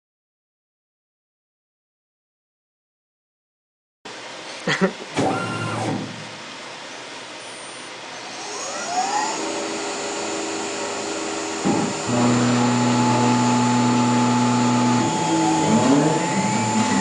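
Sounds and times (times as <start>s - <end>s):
loud steady hum: 4.1s - 17.0s
milling machine spindle whine: 7.8s - 17.0s.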